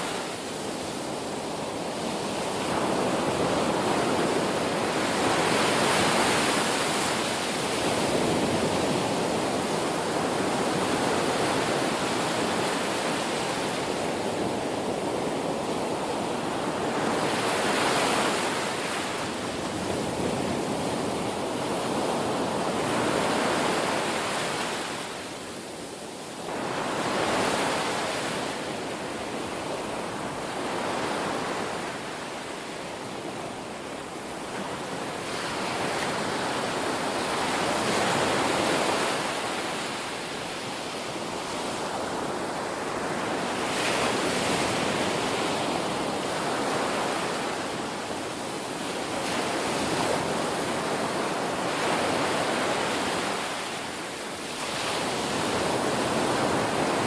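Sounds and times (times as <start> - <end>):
ocean waves breaking on shore: 0.0 - 57.0.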